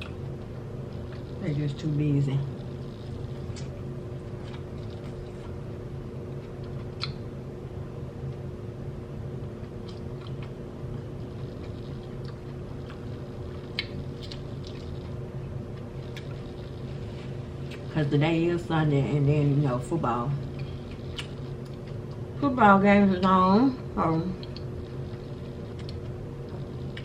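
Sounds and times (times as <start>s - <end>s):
person chewing food: 0.0s - 1.4s, 2.5s - 5.6s, 6.3s - 7.2s, 9.6s - 17.9s, 20.5s - 22.3s, 24.4s - 27.0s
steady low hum: 0.0s - 27.0s.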